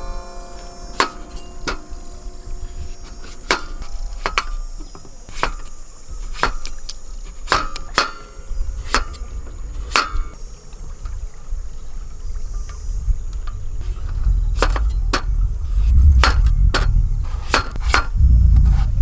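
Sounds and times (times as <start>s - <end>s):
tool knocking on wood: 7.4s - 9.2s, 16.2s - 18.2s.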